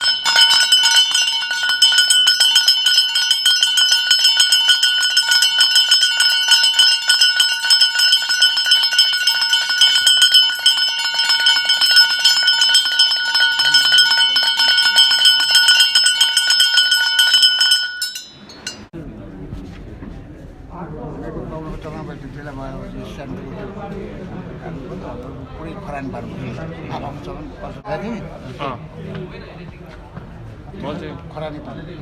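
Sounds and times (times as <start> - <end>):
metal bell rung rapidly: 0.0 - 18.9.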